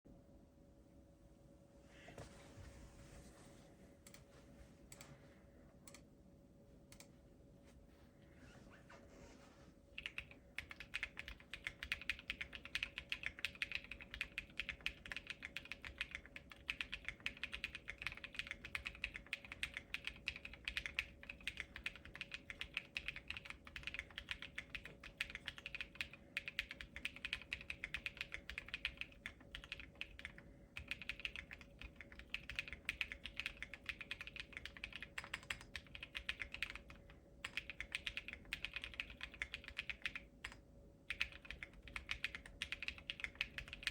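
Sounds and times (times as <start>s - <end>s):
fast mechanical keyboard typing: 10.0s - 43.9s.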